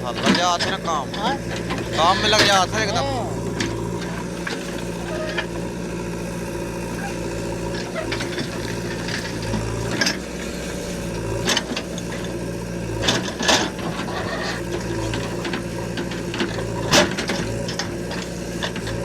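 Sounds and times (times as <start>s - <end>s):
metal clanks and knocks: 0.0s - 2.8s, 13.0s - 18.9s
diesel engine running: 0.0s - 19.0s.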